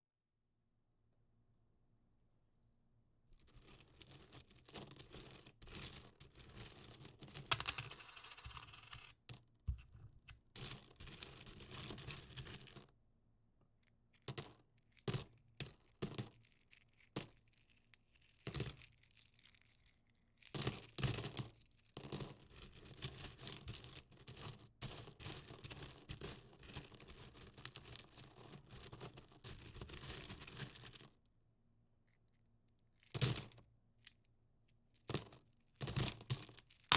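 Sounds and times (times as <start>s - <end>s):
coins clinking and jingling: 7.4s - 9.1s.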